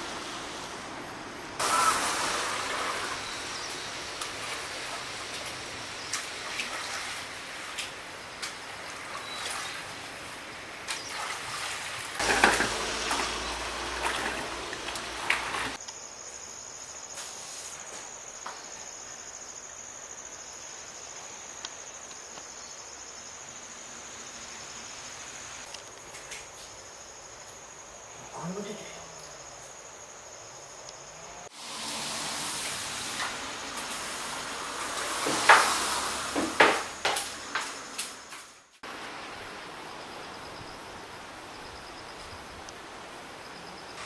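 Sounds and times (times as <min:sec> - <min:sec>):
water trickling and dripping: 0:01.9 - 0:15.8, 0:31.6 - 0:36.6
crickets trilling: 0:15.7 - 0:31.5.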